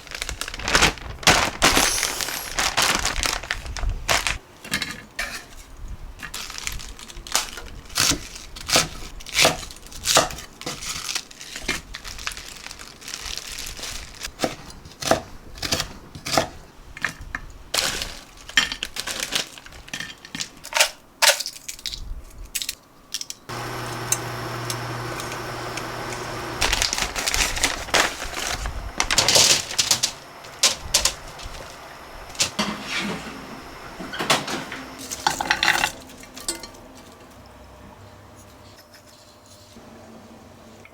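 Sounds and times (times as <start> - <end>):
machine humming: 0.6 - 4.4, 23.5 - 37.7.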